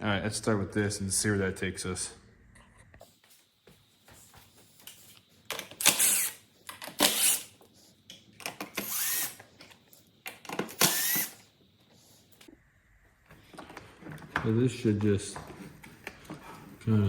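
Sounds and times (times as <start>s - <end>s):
power drill motor whine: 5.8s - 6.4s, 7.0s - 7.5s, 8.7s - 9.4s, 10.7s - 11.4s.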